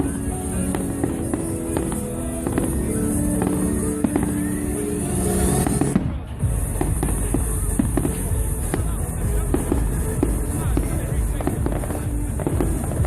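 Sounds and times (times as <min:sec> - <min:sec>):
firework whistle rising: 0:00.0 - 0:08.8
fireworks bangs and crackles: 0:00.0 - 0:13.0
loud music with held notes: 0:00.0 - 0:13.0.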